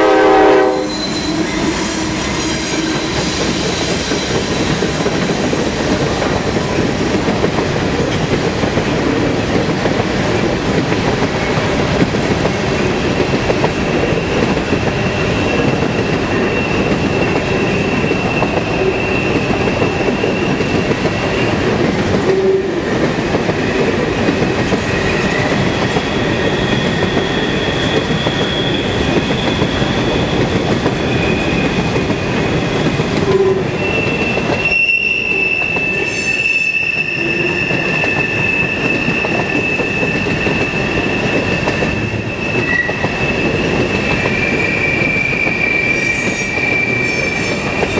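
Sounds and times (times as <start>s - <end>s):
railroad cars rumbling past: 0.0s - 47.9s
high thin wheel squeal: 0.6s - 5.0s, 13.8s - 21.7s, 24.8s - 31.9s, 32.5s - 47.9s.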